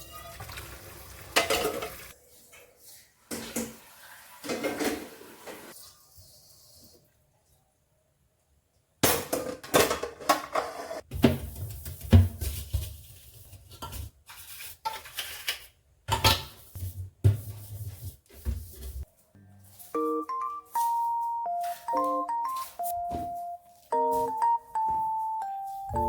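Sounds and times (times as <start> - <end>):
dishes and cutlery clinking: 1.4 - 2.2.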